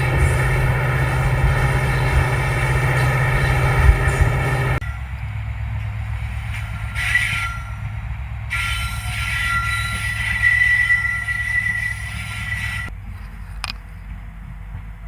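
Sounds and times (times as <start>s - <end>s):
high steady whine: 0.0s - 5.0s
locomotive engine drone: 0.0s - 10.4s.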